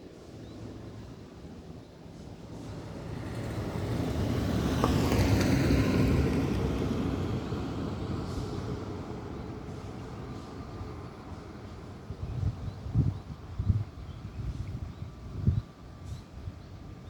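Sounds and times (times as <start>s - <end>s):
vehicle passing by: 2.6s - 11.4s.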